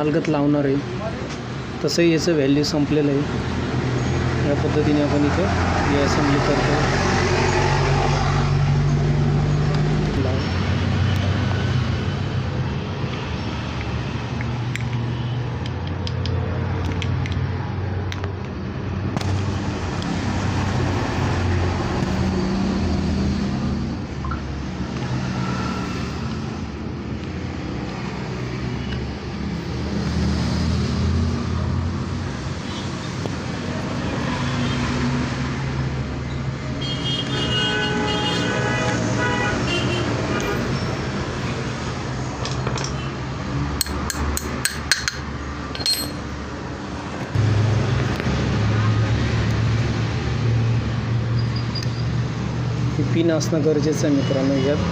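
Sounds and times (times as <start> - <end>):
road traffic hum: 0.0 - 54.9.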